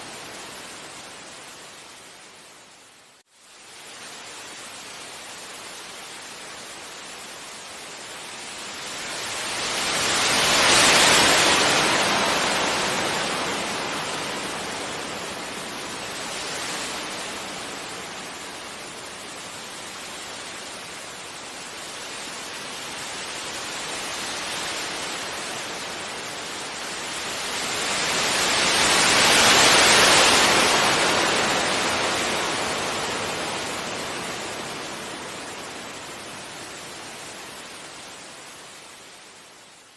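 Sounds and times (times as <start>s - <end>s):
sea waves breaking on beach: 4.2s - 38.9s.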